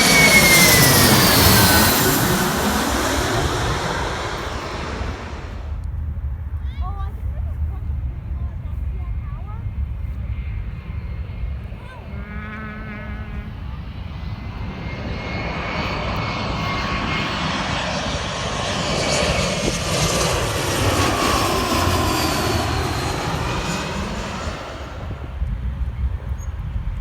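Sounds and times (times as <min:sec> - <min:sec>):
whining tones sliding down: 0:00.0 - 0:05.7
airplane engine overhead: 0:00.0 - 0:27.0.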